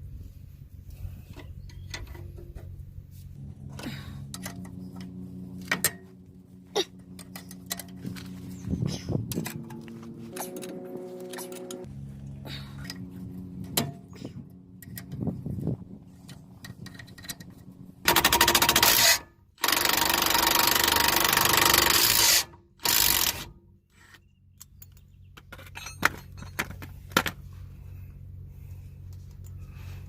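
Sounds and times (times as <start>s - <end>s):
power tool rattling: 16.6s - 23.5s.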